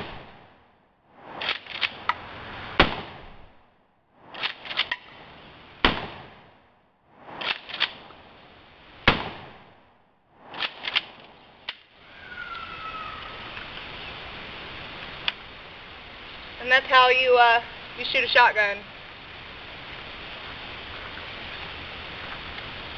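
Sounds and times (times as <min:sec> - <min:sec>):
shotgun shots: 0:00.0 - 0:00.4, 0:02.8 - 0:03.4, 0:05.8 - 0:06.5, 0:09.0 - 0:09.8.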